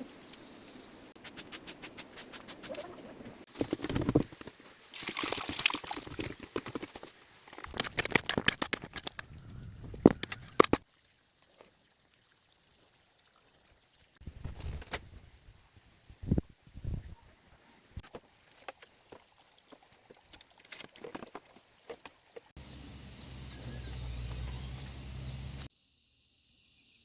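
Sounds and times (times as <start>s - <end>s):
water pouring and splashing: 3.5s - 14.8s, 18.0s - 22.6s.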